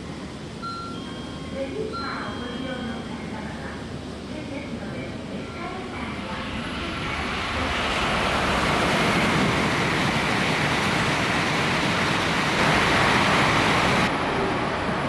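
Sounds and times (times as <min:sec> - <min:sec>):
high-speed train rushing past: 0:03.0 - 0:15.0.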